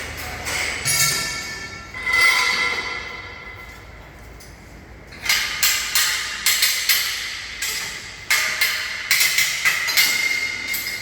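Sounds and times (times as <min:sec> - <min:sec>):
scaffolding parts clanking: 0:00.0 - 0:11.0
ringing metal clang: 0:00.3 - 0:03.8.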